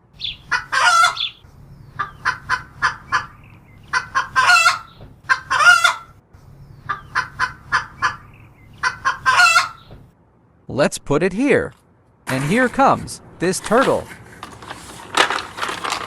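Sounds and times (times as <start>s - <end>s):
chicken clucking: 0.3s - 6.1s, 6.8s - 9.9s.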